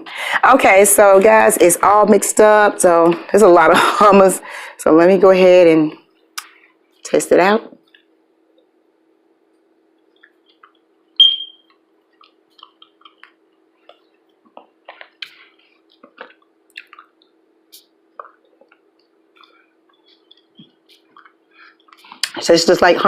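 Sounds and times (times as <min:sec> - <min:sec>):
wet mouth smacks while eating: 0:11.7 - 0:22.4.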